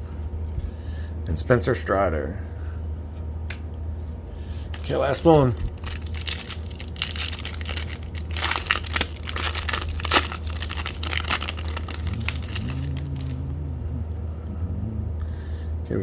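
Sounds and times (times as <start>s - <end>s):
plastic wrapper tearing and crinkling: 4.6s - 13.4s.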